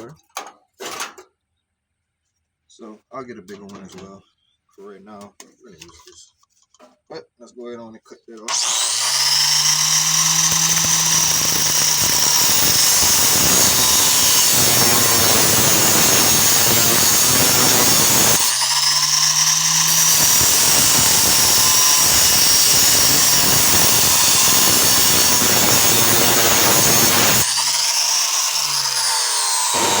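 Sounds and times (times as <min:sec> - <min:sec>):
angle grinder cutting metal: 0:08.5 - 0:30.0.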